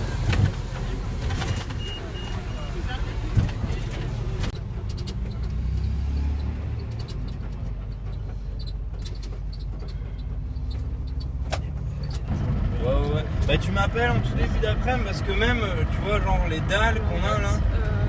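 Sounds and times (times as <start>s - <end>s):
vehicle interior rumble: 0.0s - 18.0s.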